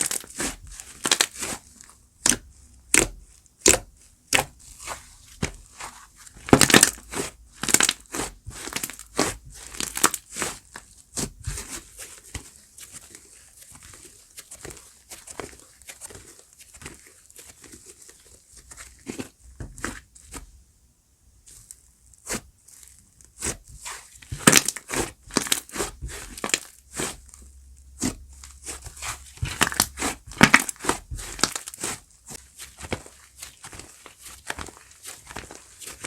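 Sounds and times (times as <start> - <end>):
slime crackling and popping: 0.0 - 1.6, 6.4 - 11.9, 21.6 - 27.2, 28.0 - 36.0.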